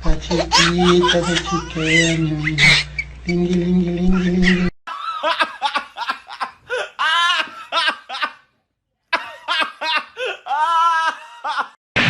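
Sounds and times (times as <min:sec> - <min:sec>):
high-pitched laughter: 0:04.0 - 0:08.4.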